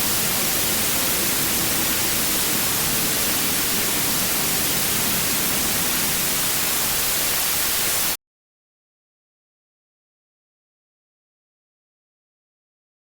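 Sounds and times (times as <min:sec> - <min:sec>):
static hiss: 0:00.0 - 0:08.2.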